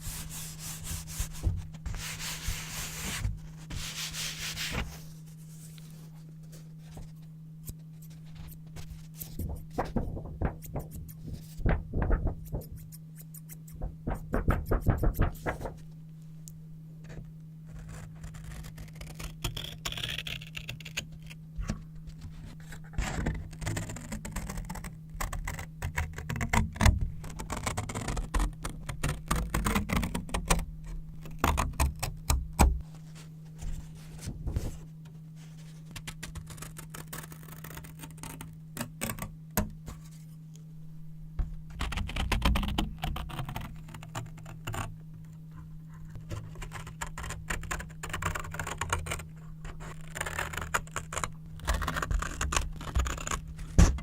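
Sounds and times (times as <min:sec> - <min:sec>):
paper crackling: 0:00.0 - 0:16.0, 0:17.7 - 0:30.6, 0:46.0 - 0:54.0
steady low hum: 0:00.0 - 0:54.0.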